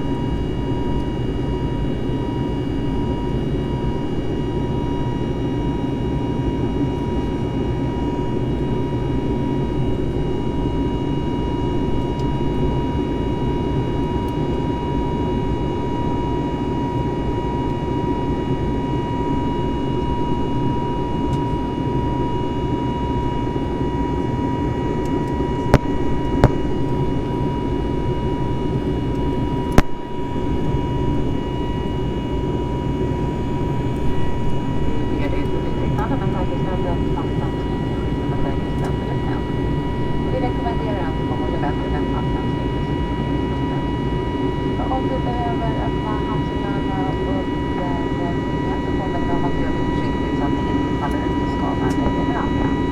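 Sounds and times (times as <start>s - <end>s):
airplane cabin engine roar: 0.0s - 52.9s
high whine: 19.1s - 52.9s.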